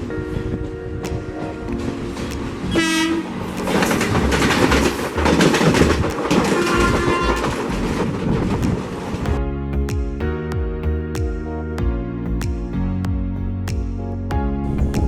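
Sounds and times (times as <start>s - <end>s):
train noise rushing: 0.0s - 9.4s
music: 0.0s - 15.0s
locomotive horn blast: 2.7s - 3.6s, 6.4s - 7.7s.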